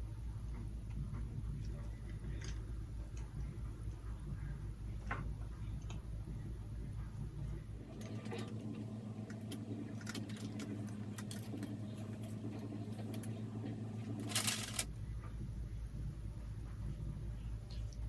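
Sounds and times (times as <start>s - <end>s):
steady low hum: 0.0s - 18.0s
stand parts clicking and rattling: 14.1s - 14.9s.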